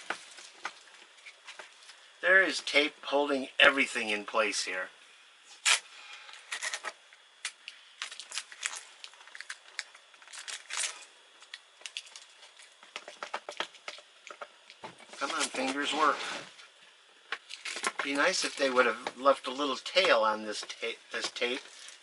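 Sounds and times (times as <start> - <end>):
tape peeling crackles: 5.5 - 5.8, 6.5 - 14.0, 17.4 - 18.8.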